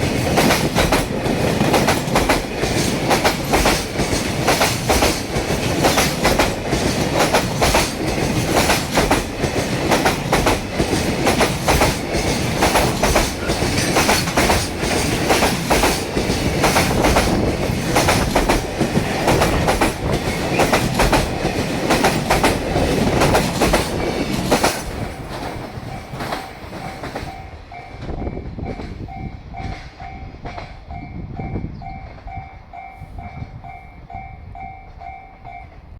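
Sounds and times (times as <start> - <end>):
train wheels clickety-clack: 0.0 - 35.9
level-crossing warning bell: 24.8 - 35.9.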